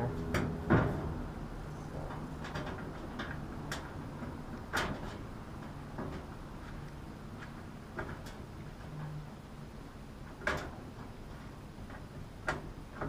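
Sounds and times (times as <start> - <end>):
steady low hum: 0.0 - 13.0
clicks and light metal knocks: 2.0 - 9.2, 10.2 - 13.0.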